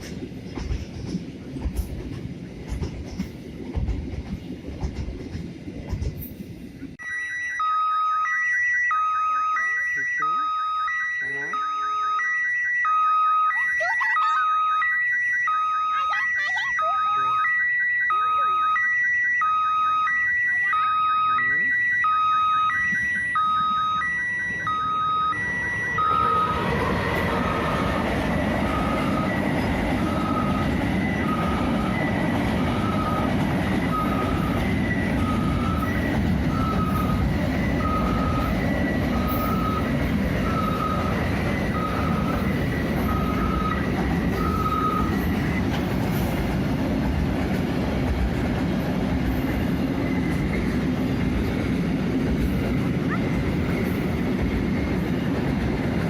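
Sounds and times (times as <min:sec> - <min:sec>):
freight train wagons rumbling: 0:00.0 - 0:07.0, 0:20.4 - 0:56.0
level crossing two-tone alarm: 0:07.0 - 0:26.8, 0:28.6 - 0:33.3, 0:33.9 - 0:45.3.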